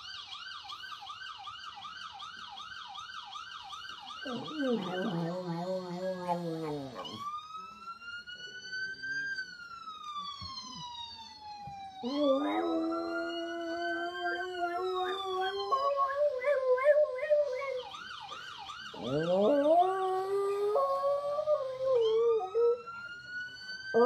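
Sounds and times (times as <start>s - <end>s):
vehicle siren wailing: 0.0s - 24.0s
dog howling: 4.2s - 7.3s, 12.0s - 17.9s, 18.9s - 22.8s.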